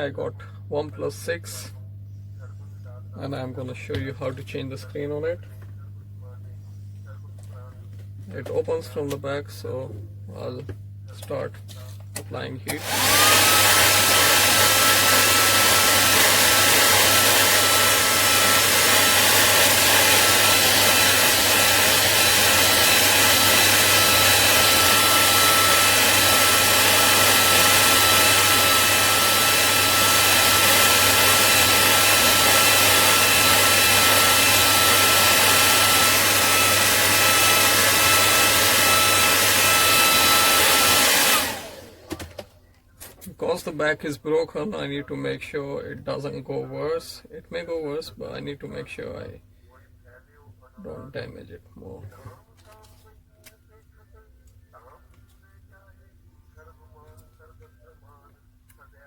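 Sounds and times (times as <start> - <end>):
hot-air blower whining: 0.0 - 42.6.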